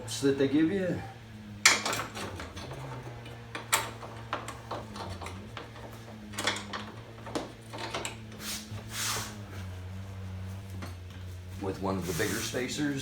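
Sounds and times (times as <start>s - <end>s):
metal bolts clinking: 1.6s - 8.2s.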